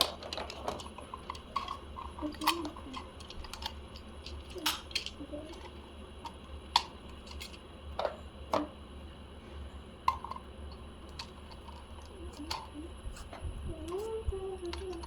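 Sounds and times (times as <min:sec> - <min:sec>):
plastic toy parts clicking: 0:00.0 - 0:08.7, 0:11.1 - 0:13.3, 0:13.9 - 0:15.0.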